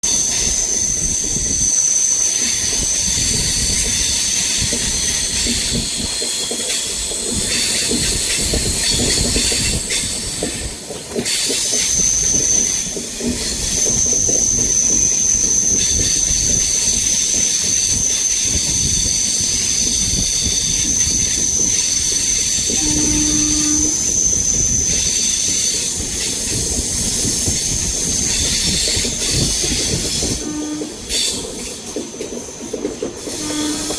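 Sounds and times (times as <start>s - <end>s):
wheels rumbling on rails: 0.0s - 33.9s
train wheels squealing: 0.1s - 33.9s.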